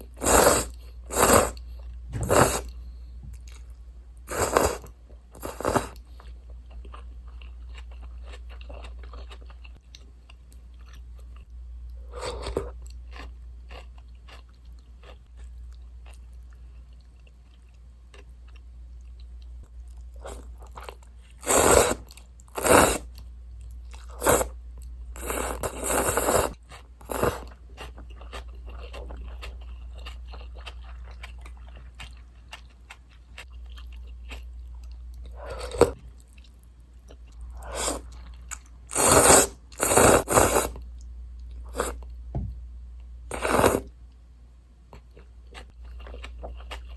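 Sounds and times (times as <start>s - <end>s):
loud noodle slurps: 0.1s - 2.7s, 4.3s - 6.0s, 21.4s - 23.1s, 24.2s - 24.5s, 25.2s - 27.5s, 37.6s - 38.1s, 38.9s - 40.8s, 41.7s - 42.0s, 43.3s - 43.9s
quiet chewing: 0.2s - 42.2s.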